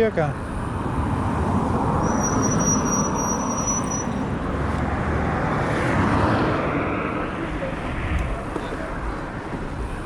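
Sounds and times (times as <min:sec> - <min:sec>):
road traffic noise: 0:00.0 - 0:10.0
thin high whine: 0:02.0 - 0:04.2.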